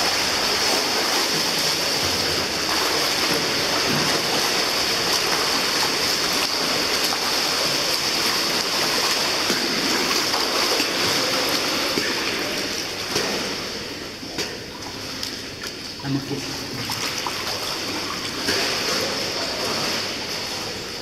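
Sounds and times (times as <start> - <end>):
rushing water in a pool: 0.0 - 21.0.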